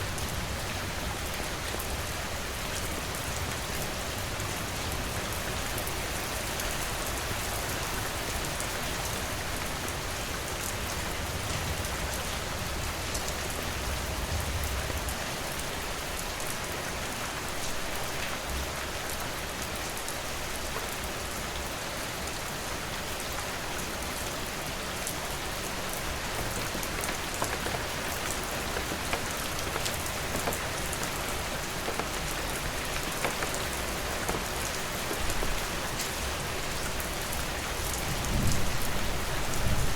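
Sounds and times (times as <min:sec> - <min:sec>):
rain pattering on surfaces: 0:00.0 - 0:39.9
raindrops ticking: 0:24.6 - 0:39.6.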